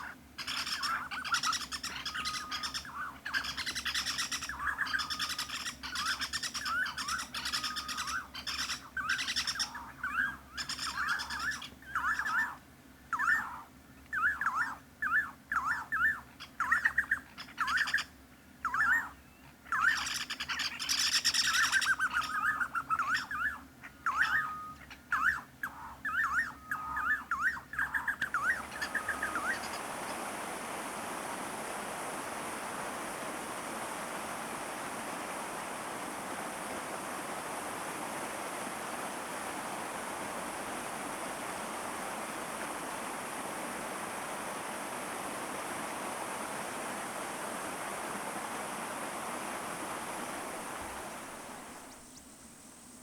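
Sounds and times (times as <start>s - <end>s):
steady rushing hiss: 28.5s - 53.0s.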